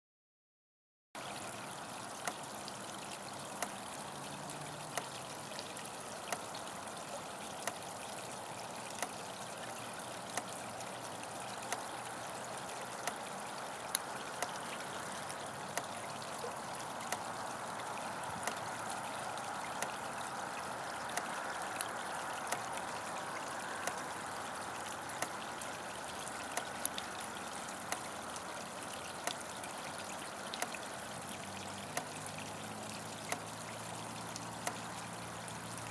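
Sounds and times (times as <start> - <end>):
trickling water: 1.2 - 35.9
electric fence ticking: 1.5 - 35.9.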